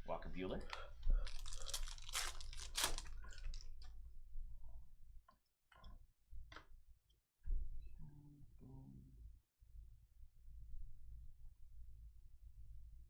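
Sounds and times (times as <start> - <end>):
cards rustling: 0.6 - 3.7
foil wrapper crinkling and tearing: 0.7 - 3.9.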